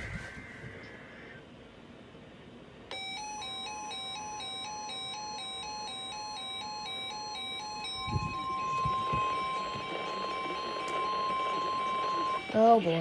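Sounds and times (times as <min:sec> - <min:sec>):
two-pitch electronic alarm: 0:02.9 - 0:13.0
buzzy data tone: 0:07.2 - 0:13.0.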